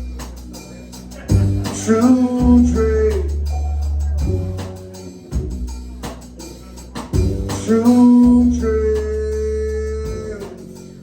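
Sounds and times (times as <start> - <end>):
deep bass line: 0.0 - 11.0
live rock band playing: 0.0 - 11.0.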